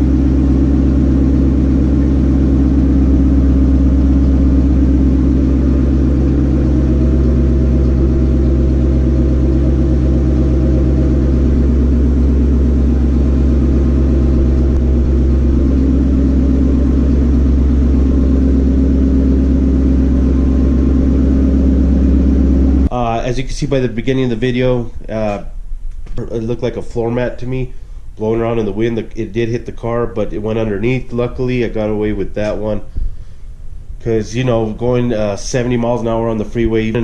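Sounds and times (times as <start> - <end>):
car engine droning: 0.0 - 37.0.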